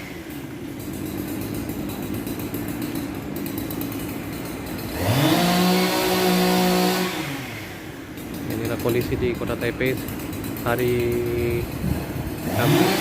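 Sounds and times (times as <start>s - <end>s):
small engine revving: 0.0s - 13.0s
street traffic: 0.0s - 13.0s.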